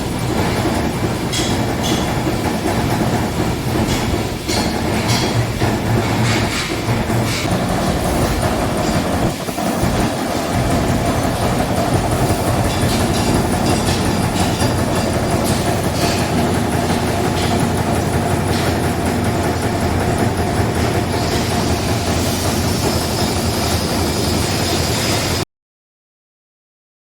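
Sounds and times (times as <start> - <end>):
punch press clattering: 1.3 - 21.9.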